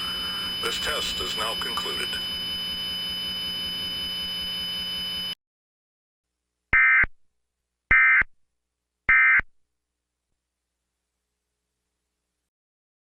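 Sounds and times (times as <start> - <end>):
electronic hum with high whine: 0.0 - 5.4
loud bursts of data tone: 0.0 - 5.4.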